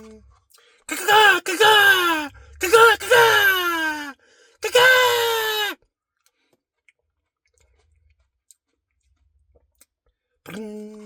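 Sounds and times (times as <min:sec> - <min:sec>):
loud wailed vocal: 0:00.9 - 0:05.8
mouth clicks of chewing: 0:06.2 - 0:11.0.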